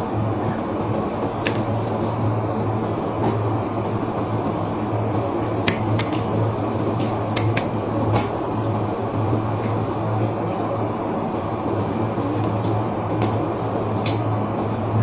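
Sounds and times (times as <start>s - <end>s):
short sharp clicks: 5.7s - 6.2s, 7.4s - 7.8s.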